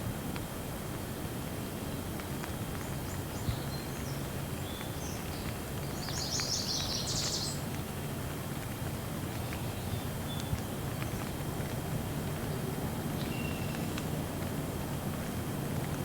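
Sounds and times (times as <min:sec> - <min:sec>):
light rain: 0:00.0 - 0:16.0
water drip ticks: 0:04.4 - 0:16.0.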